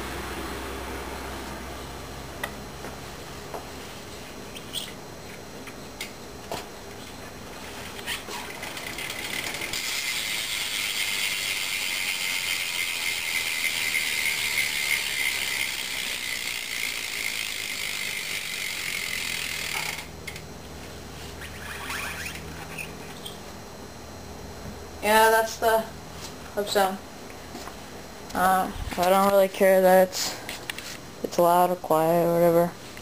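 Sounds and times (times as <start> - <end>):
bike hub ratcheting buzz: 7.8 - 20.4, 21.4 - 23.4.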